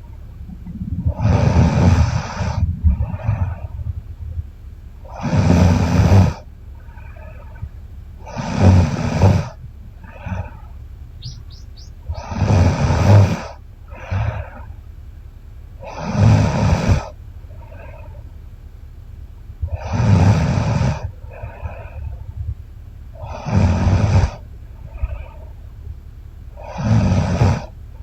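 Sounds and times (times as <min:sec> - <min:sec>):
soft breathing: 0:00.0 - 0:14.8
woman snoring: 0:08.3 - 0:09.6.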